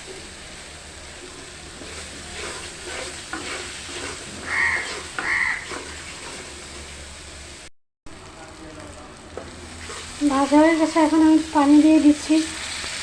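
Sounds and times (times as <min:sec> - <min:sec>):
paste sizzling in a pan: 0:00.0 - 0:13.0
spoon scraping a pan: 0:01.7 - 0:07.0.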